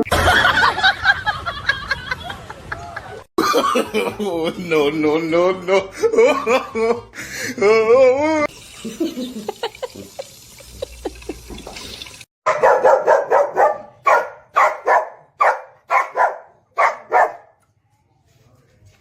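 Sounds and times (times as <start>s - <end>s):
dog barking: 12.4s - 17.6s.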